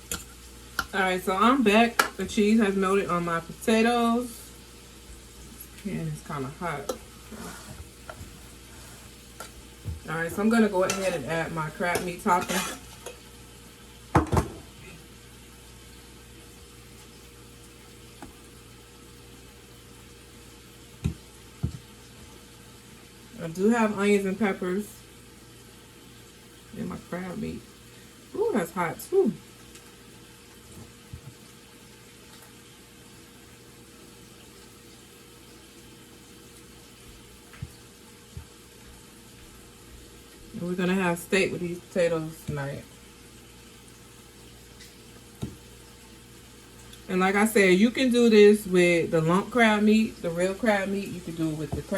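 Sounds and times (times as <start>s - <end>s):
faint constant hum: 0.0s - 51.9s
utensil scraping a dish: 6.9s - 8.2s, 11.9s - 13.2s.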